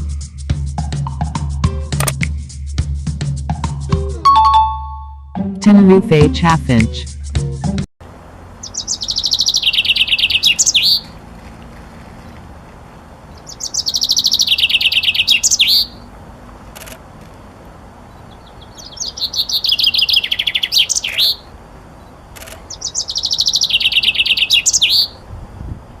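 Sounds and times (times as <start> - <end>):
finch singing trills: 8.6 - 11.2, 13.3 - 16.0, 18.1 - 25.2.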